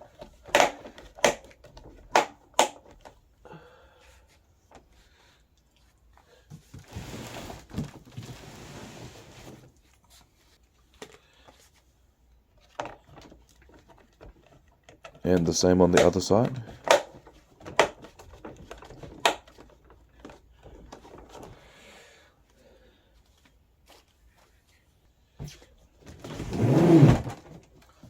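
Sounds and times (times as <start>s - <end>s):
rustling scrape: 6.8s - 10.6s.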